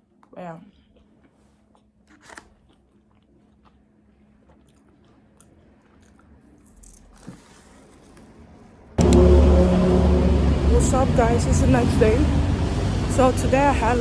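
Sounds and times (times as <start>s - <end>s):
person eating crunching: 0.7s - 8.6s.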